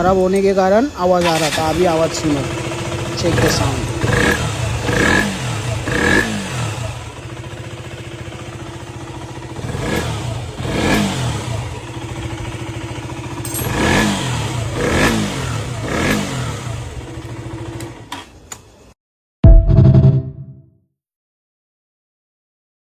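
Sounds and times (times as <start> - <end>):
motorcycle engine idling: 0.0 - 18.9.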